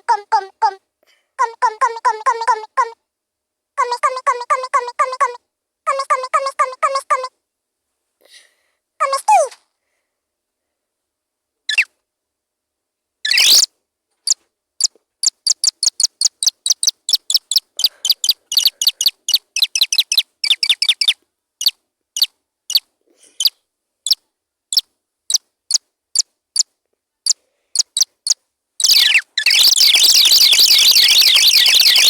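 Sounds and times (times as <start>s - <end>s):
high bird-like chirps: 13.3s - 13.7s, 14.8s - 21.2s, 27.8s - 32.0s.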